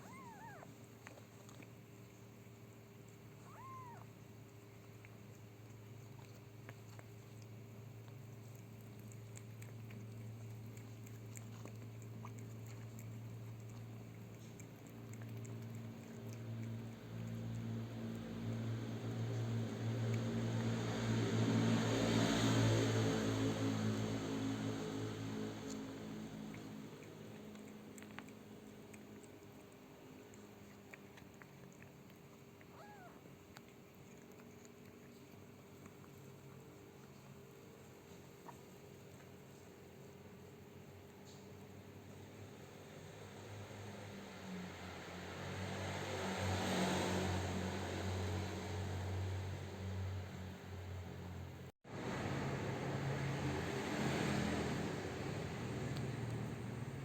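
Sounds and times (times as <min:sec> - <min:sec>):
kitten mewing: 0:00.0 - 0:00.8, 0:03.4 - 0:04.2, 0:32.6 - 0:33.3
steady low hum: 0:00.0 - 0:44.1
cat licking and chewing: 0:00.0 - 0:57.0.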